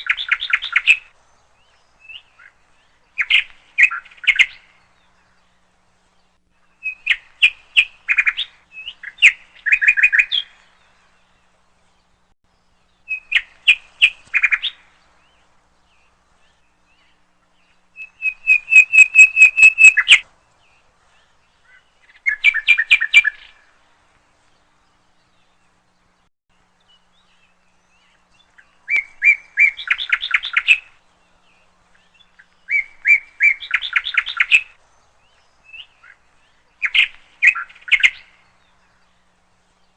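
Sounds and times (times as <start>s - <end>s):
songbird chirping: 0.0s - 39.9s.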